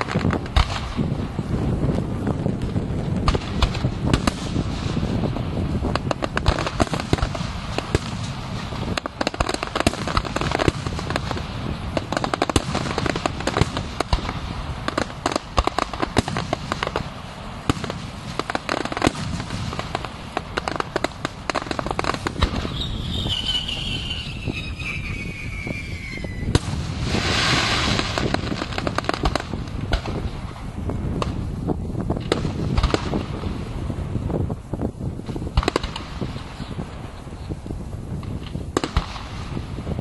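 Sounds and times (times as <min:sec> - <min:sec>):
fireworks bangs and crackling: 0:00.0 - 0:40.0
falling firework whistle: 0:21.5 - 0:29.1.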